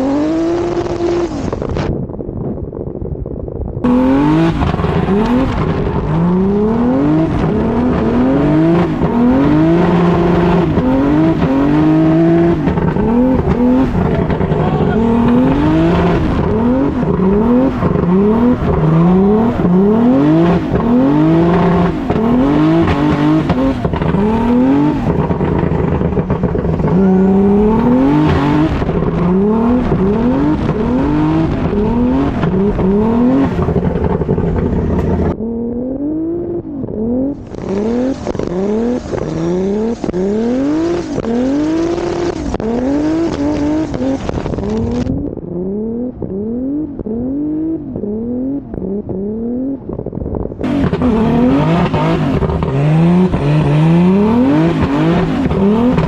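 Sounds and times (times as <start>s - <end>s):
car engine revving hard: 0.0s - 1.8s, 3.8s - 50.0s, 50.6s - 56.0s
tire squeal: 4.6s - 35.3s.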